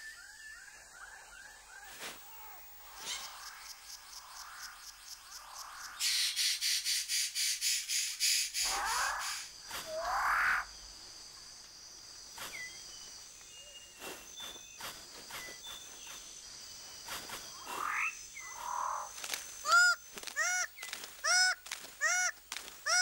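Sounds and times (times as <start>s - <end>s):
high insect drone: 0.0s - 23.0s
loud croaking calls: 2.3s - 10.7s, 17.5s - 23.0s.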